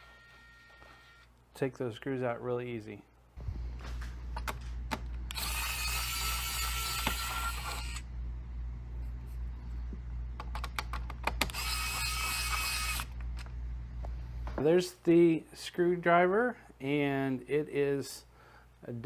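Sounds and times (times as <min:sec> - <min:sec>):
steady low hum: 0:03.3 - 0:14.8
electric screwdriver whirring: 0:05.3 - 0:08.1, 0:11.4 - 0:13.2.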